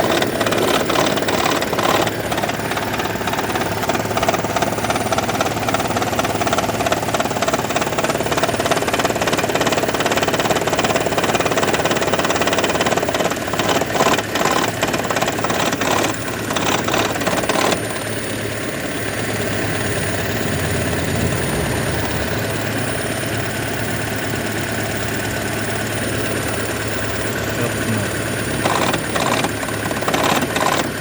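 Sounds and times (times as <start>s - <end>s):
car engine idling: 0.0s - 31.0s
loud knocking rattle: 0.0s - 31.0s.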